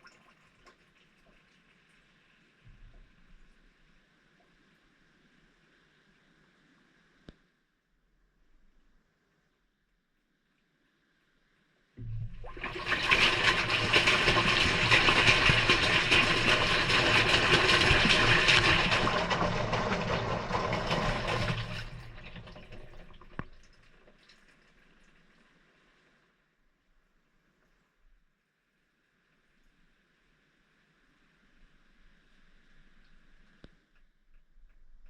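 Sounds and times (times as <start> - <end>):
low machine hum: 12.0 - 23.0
water rushing into washing machine: 12.0 - 24.6.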